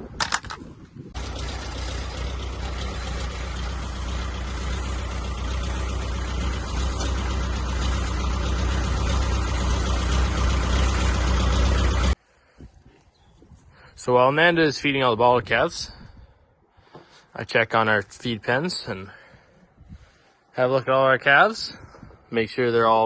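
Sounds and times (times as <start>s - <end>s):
tractor engine running: 0.0s - 12.2s.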